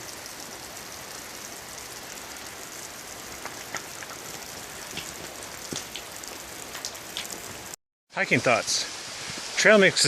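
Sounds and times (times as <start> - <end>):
water drips: 0.0 - 7.8
falling water rushing: 0.0 - 10.0.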